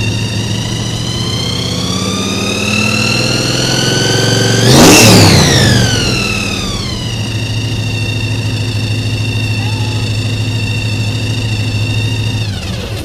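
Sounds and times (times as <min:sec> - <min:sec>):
supercharged engine revving: 0:00.0 - 0:13.0
supercharger whine: 0:00.0 - 0:13.0.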